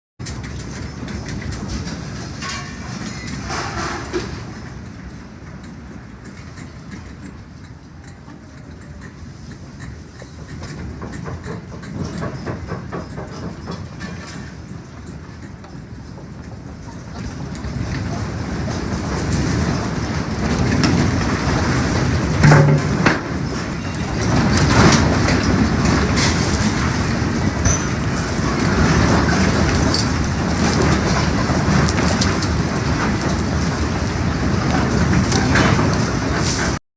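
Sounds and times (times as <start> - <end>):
objects rattling and clattering: 0.2 - 5.1, 8.8 - 36.8
deep earthquake rumble: 16.1 - 36.7.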